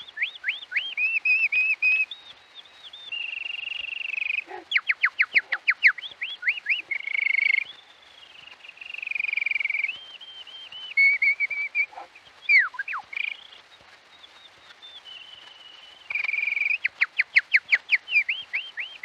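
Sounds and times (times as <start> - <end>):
person whistling bird song: 0.1 - 7.7, 8.8 - 13.3.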